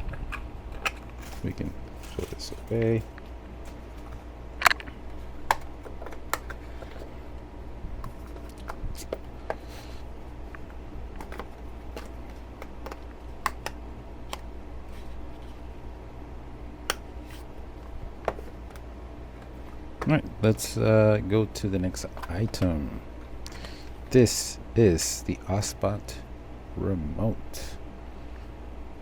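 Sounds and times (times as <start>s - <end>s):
low room hum: 0.0s - 29.0s
boxes clicking and tapping on desk: 5.5s - 7.1s, 11.2s - 14.4s.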